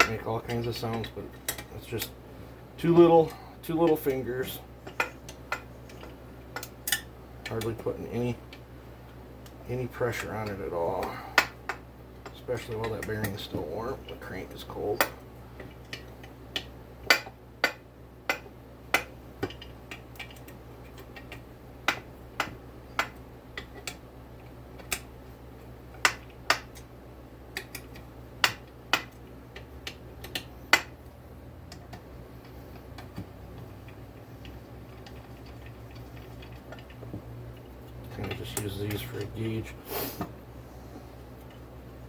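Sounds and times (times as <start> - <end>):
steady low hum: 0.0 - 42.0
metallic clicks and ticks: 31.7 - 39.6.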